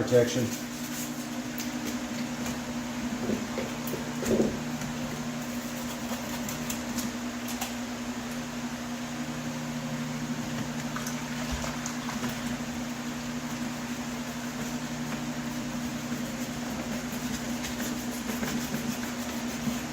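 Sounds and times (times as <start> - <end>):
low mechanical hum: 0.0 - 19.9
sanding sponge rasping on metal: 15.4 - 19.9.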